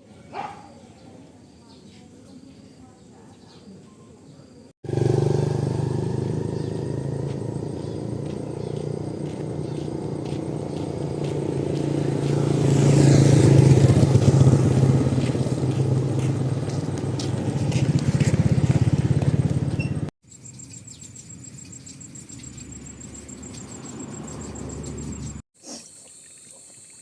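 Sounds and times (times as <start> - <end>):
small engine humming: 4.8 - 20.1.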